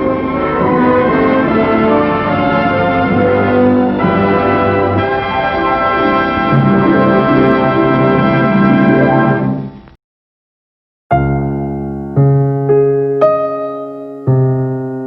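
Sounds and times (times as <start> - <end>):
orchestral brass chords: 0.0 - 9.8.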